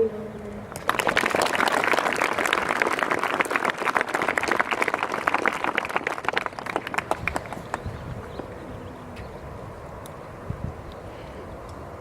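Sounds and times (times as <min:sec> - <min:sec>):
audience applauding: 0:00.7 - 0:08.3.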